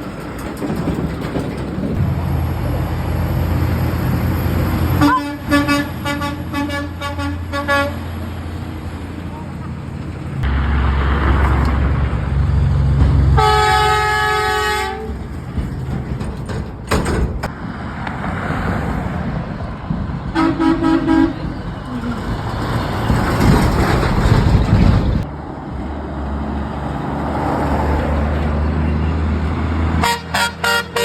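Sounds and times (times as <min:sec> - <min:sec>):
traffic rumble: 0:00.0 - 0:31.0
lower horn honk: 0:02.0 - 0:08.2, 0:13.3 - 0:15.2, 0:20.3 - 0:22.2, 0:30.0 - 0:31.0
truck horn blast: 0:04.8 - 0:08.2, 0:13.3 - 0:15.2, 0:20.3 - 0:22.2, 0:30.0 - 0:31.0.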